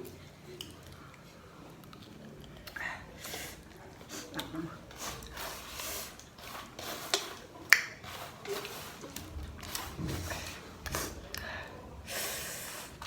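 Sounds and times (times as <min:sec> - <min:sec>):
short noisy breaths: 0:10.2 - 0:13.0.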